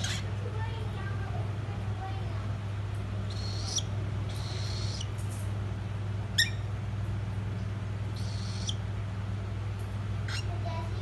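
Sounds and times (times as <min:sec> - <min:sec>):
chicks squeaky calls: 0:00.0 - 0:00.3, 0:03.2 - 0:05.2, 0:06.4 - 0:06.7, 0:08.1 - 0:08.9, 0:10.2 - 0:10.6
steady low hum: 0:00.0 - 0:11.0.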